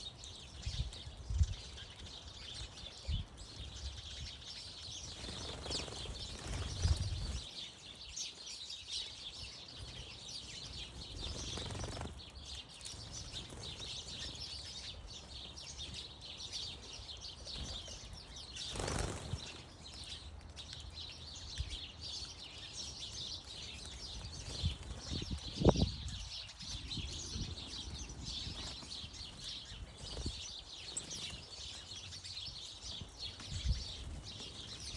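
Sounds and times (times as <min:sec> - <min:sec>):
small birds chirping: 0:00.0 - 0:34.9
wing flutters: 0:05.1 - 0:07.5, 0:10.9 - 0:12.2, 0:18.6 - 0:19.6.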